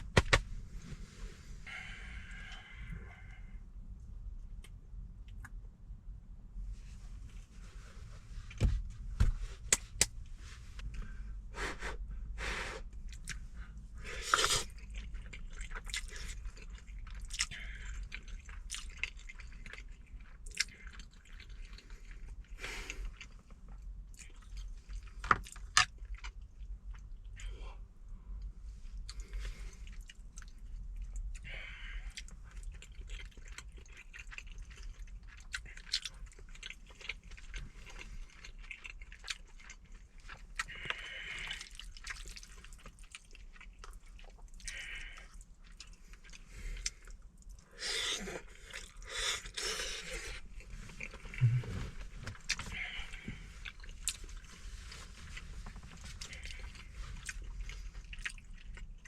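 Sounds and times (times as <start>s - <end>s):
steady low hum: 0.0s - 25.2s, 34.8s - 59.0s
person chewing food: 12.8s - 27.6s, 29.0s - 59.0s.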